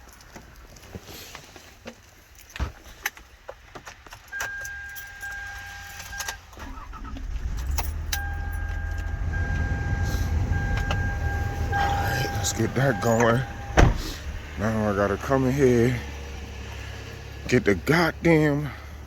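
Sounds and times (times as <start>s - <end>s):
van engine starting and idling: 4.4s - 19.0s
electronic warning chime: 7.6s - 13.9s.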